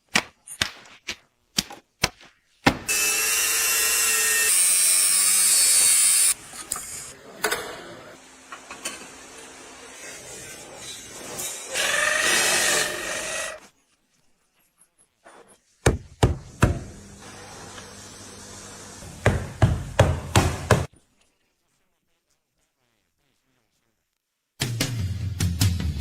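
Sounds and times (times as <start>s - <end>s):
loud tool whirring: 2.9s - 6.4s, 11.6s - 13.6s.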